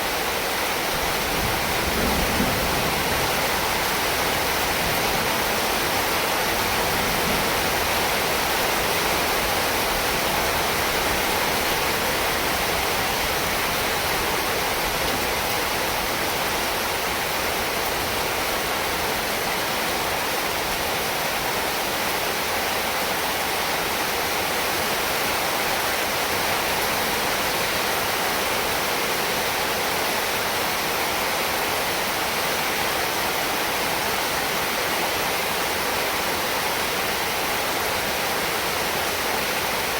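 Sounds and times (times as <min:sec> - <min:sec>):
heavy rain hissing: 0:00.0 - 0:39.9.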